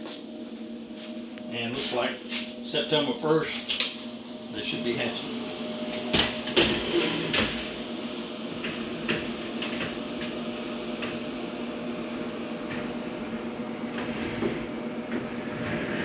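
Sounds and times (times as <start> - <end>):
steady machine hum: 0.0 - 16.0.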